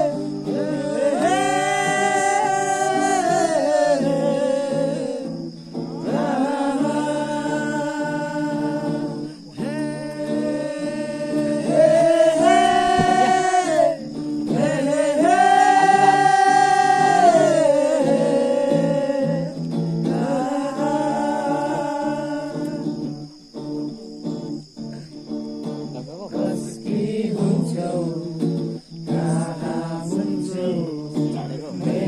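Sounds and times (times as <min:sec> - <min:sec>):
person singing long notes: 0:00.0 - 0:23.3.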